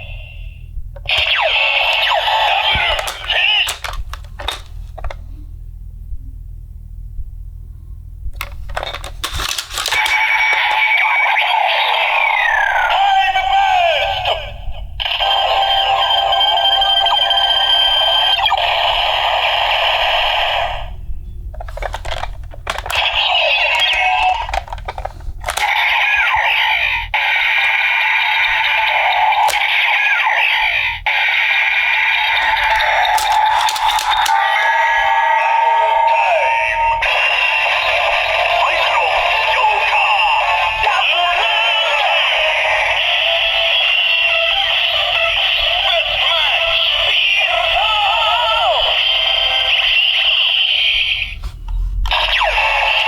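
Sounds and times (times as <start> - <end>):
sharp clicks: 1.0 - 5.2, 8.4 - 10.9, 21.6 - 25.8, 29.4 - 29.8, 32.4 - 34.6
toy electronic sound effects: 1.1 - 5.2, 21.6 - 26.6, 32.3 - 34.7, 37.2 - 47.8
tinny toy music with singing: 37.1 - 51.2.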